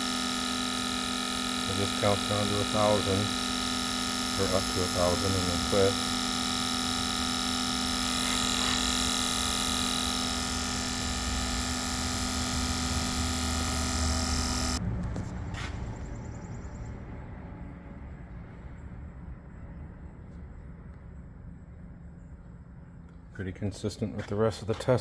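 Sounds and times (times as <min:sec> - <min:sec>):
fuel injector tester buzzing: 0:00.0 - 0:14.8
low hum: 0:00.0 - 0:23.2.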